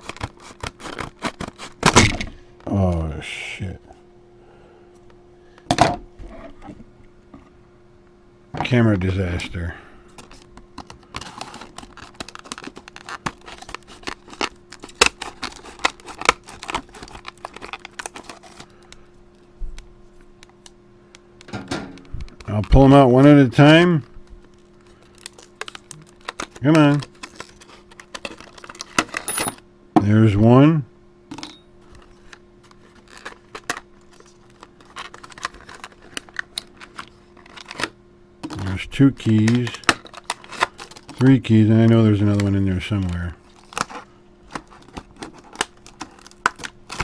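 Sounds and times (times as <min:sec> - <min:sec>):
scissors cutting plastic: 0:00.0 - 0:02.0, 0:10.2 - 0:19.0, 0:24.5 - 0:29.3, 0:31.9 - 0:41.3, 0:42.3 - 0:47.0
packaging handled: 0:00.0 - 0:02.4, 0:10.1 - 0:20.7, 0:21.4 - 0:29.4, 0:31.8 - 0:41.5, 0:42.2 - 0:47.0
plastic crackling: 0:00.0 - 0:02.7, 0:10.1 - 0:23.0, 0:23.6 - 0:29.3, 0:31.8 - 0:47.0
keys clinking: 0:29.2 - 0:29.6.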